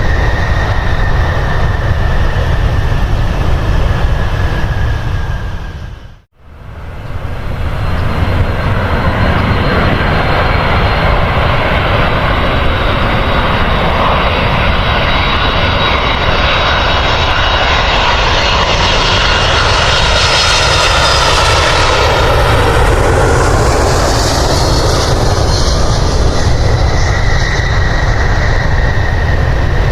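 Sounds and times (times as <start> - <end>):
airliner engines running: 0.0 - 29.9.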